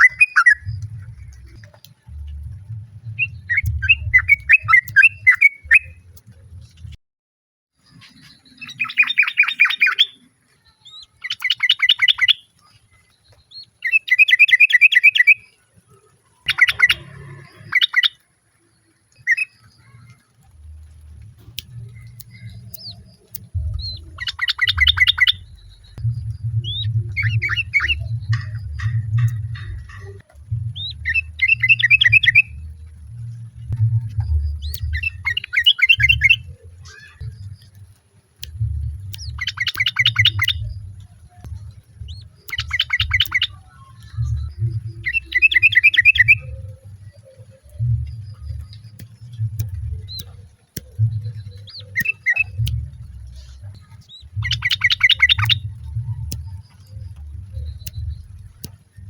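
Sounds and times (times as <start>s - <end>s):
low rumble: 0.6s - 7.0s, 19.8s - 59.0s
bird trilling call: 16.5s - 18.2s, 51.1s - 53.0s, 54.3s - 55.8s.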